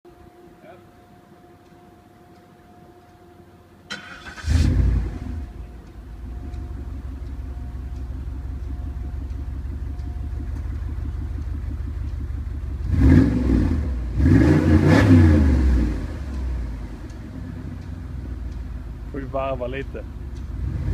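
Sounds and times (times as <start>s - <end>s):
car engine starting and idling: 3.9s - 20.9s
engine revving: 4.0s - 5.6s, 12.7s - 17.6s, 19.5s - 20.9s.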